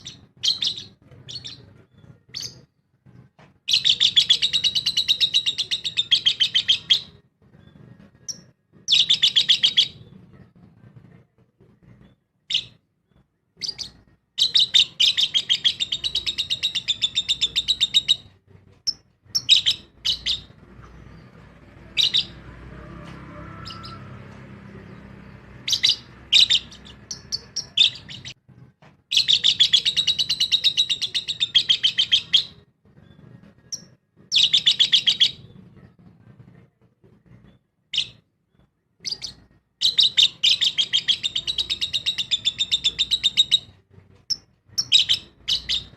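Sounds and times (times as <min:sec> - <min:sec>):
lovebirds chirping: 0:00.0 - 0:02.8, 0:03.7 - 0:10.2, 0:11.8 - 0:22.5, 0:23.6 - 0:28.4, 0:29.1 - 0:35.6, 0:39.0 - 0:45.9
sharp bird calls: 0:23.6 - 0:28.4, 0:44.3 - 0:45.9.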